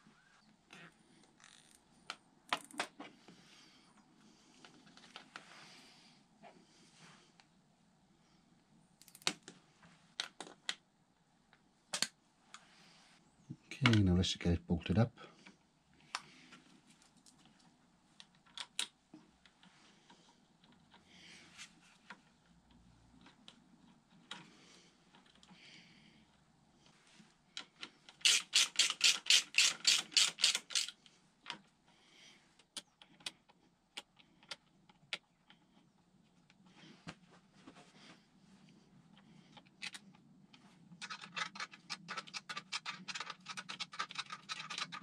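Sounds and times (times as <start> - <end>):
ratchet clicking: 28.2 - 30.9.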